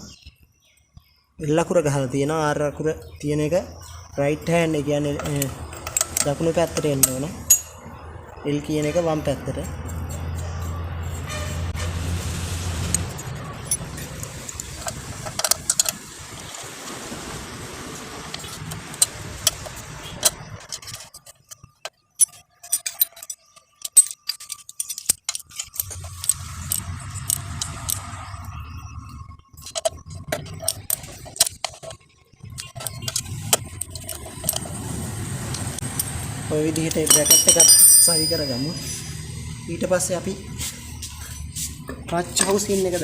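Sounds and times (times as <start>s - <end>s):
metal tools clinking: 4.5s - 11.7s, 12.9s - 16.0s, 18.4s - 28.6s, 29.5s - 34.8s, 35.5s - 43.0s.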